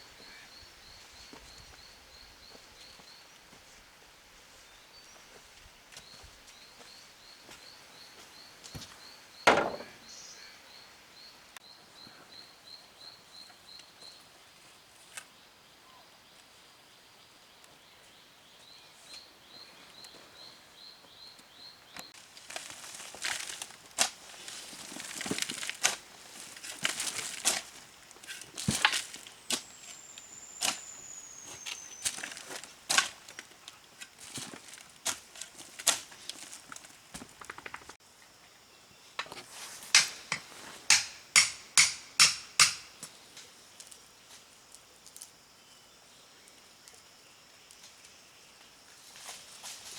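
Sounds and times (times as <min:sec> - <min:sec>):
sharp knocks and scrapes: 0:09.5 - 0:10.0, 0:39.2 - 0:43.0.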